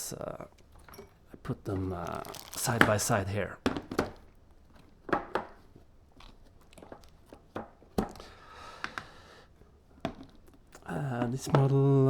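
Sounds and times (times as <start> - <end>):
soft rustle: 1.8 - 3.2.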